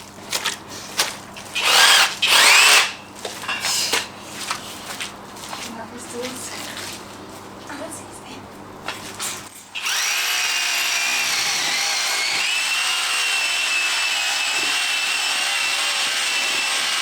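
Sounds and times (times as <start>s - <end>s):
electric drill whining: 1.6s - 3.0s, 9.8s - 17.0s.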